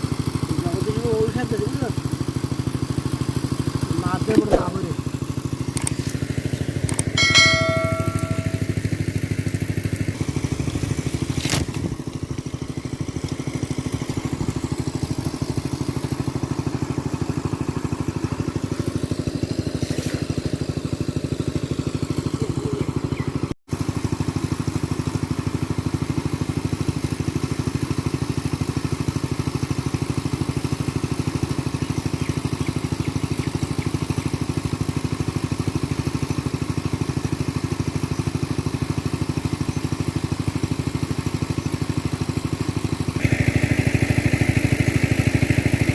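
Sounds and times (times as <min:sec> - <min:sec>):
small engine running: 0:00.0 - 0:45.9
brief high pitched tone: 0:07.2 - 0:08.8.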